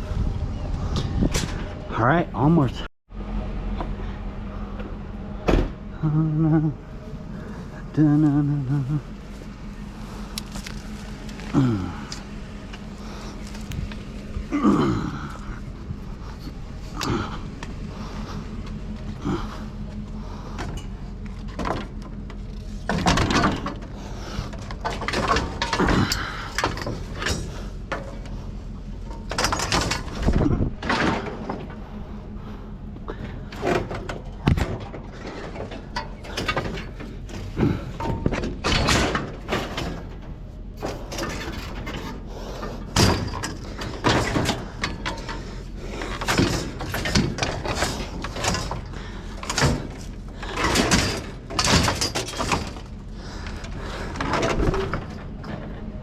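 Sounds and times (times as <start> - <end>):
steady low hum: 0.0 - 56.0
knocks bangs and clatter: 20.5 - 28.4, 29.0 - 31.9, 33.1 - 56.0.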